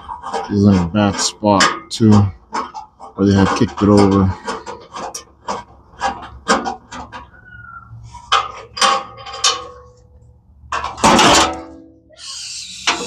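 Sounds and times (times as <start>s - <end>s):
loud metallic clang: 10.9s - 11.9s.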